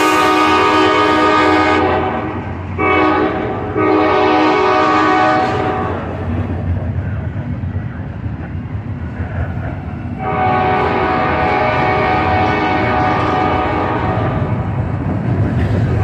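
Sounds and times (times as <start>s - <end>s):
locomotive air horn: 0.0s - 6.1s, 10.2s - 14.6s
passing train rumble: 0.0s - 16.0s.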